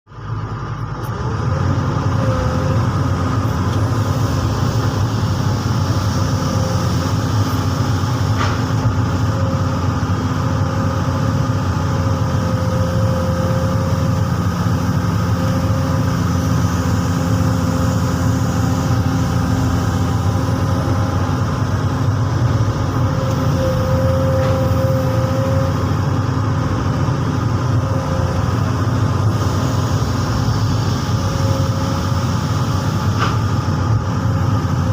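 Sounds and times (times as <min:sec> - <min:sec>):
diesel engine running: 0:00.1 - 0:34.9
thin whine: 0:12.2 - 0:34.9.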